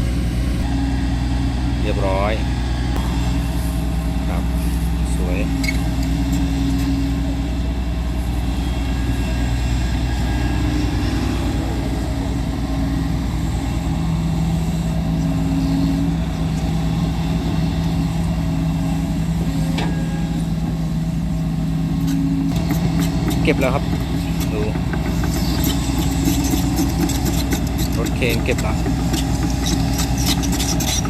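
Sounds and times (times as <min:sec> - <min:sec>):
diesel engine running: 0:00.0 - 0:31.0
steady hum tone: 0:02.5 - 0:06.4.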